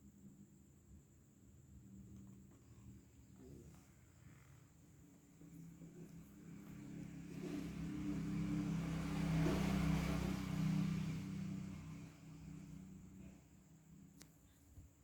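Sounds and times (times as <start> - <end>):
motor vehicle passing by: 5.5 - 13.9.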